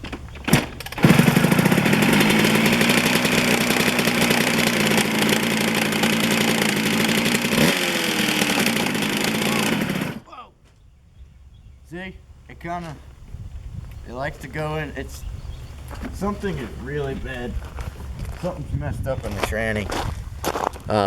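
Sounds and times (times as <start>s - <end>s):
two-stroke engine running: 0.0s - 10.3s.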